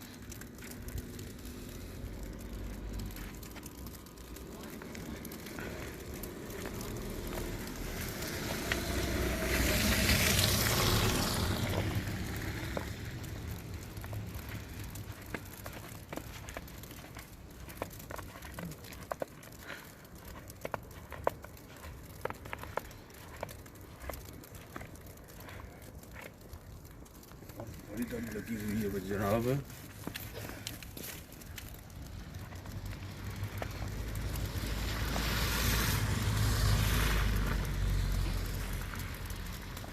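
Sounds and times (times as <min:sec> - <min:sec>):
steady low rumble: 0:00.0 - 0:28.7
footsteps crunching in snow: 0:00.0 - 0:39.9
passing vehicle tyre noise: 0:00.0 - 0:39.9.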